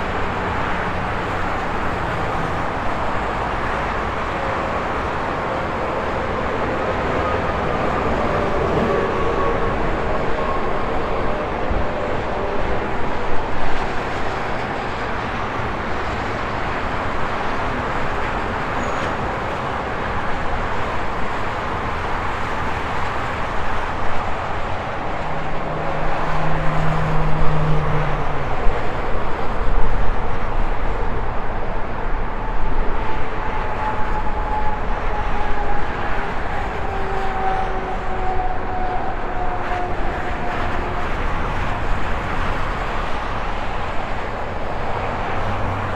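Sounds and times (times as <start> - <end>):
highway traffic passing: 0.0 - 45.9.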